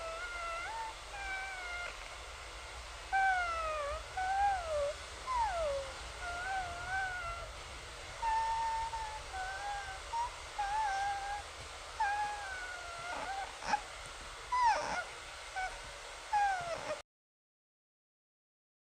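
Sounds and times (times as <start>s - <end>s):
kitten-like whining mews: 0.0s - 2.2s, 3.1s - 7.6s, 8.2s - 13.9s, 14.5s - 17.0s.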